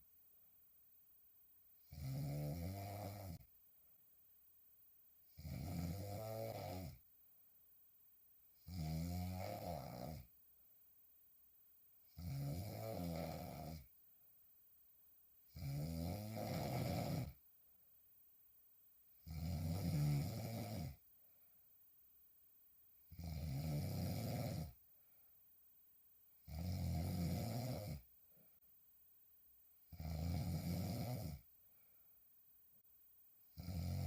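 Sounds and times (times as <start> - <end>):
woman snoring: 1.8 - 3.5, 5.3 - 7.0, 8.6 - 10.3, 12.1 - 13.9, 15.5 - 17.4, 19.2 - 21.0, 23.1 - 24.8, 26.5 - 28.1, 29.9 - 31.5, 33.5 - 34.0.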